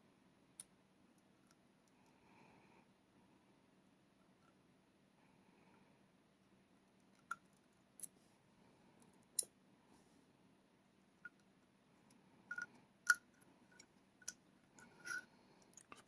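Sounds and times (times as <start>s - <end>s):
metal parts and tools clicking: 12.5s - 16.0s.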